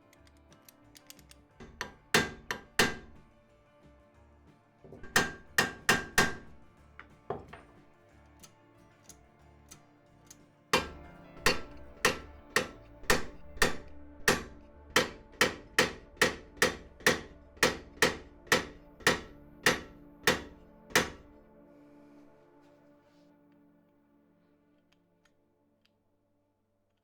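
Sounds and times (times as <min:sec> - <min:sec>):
background music: 0:00.0 - 0:27.0
hammer ringing blows on metal: 0:10.8 - 0:21.3.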